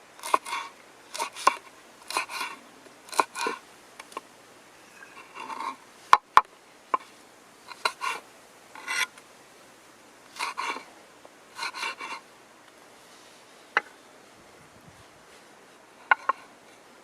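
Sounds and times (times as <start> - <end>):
knife scraping strokes: 0.2 - 3.6, 4.9 - 5.8, 7.7 - 8.2, 8.8 - 9.2, 10.3 - 10.9, 11.5 - 12.2.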